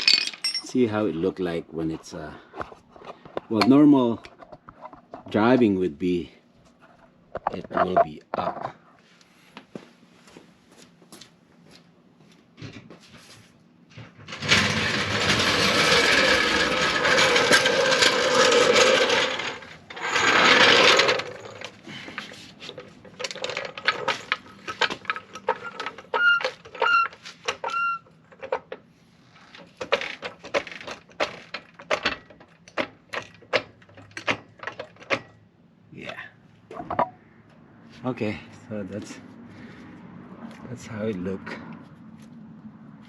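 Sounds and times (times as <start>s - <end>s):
floor jack rolling on wheels: 14.0s - 28.6s
sharp clicks and metal knocks: 29.6s - 35.4s.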